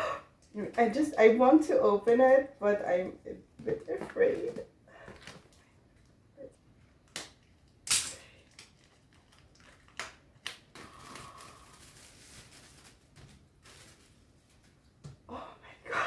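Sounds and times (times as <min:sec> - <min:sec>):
packaging clicks and crinkles: 0:07.2 - 0:14.8
paper rustling: 0:10.8 - 0:15.0.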